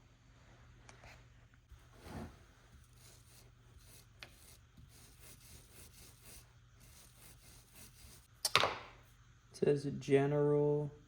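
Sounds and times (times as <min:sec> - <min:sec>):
faint rubbing: 0:01.7 - 0:08.3.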